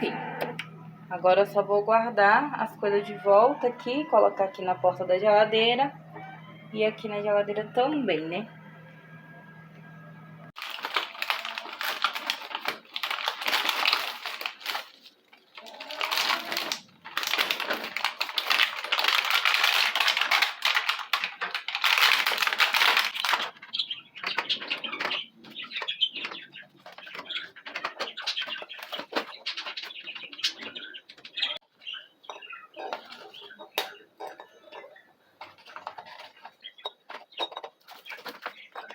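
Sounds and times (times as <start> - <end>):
food containers clattering: 10.6 - 31.6, 32.2 - 38.9.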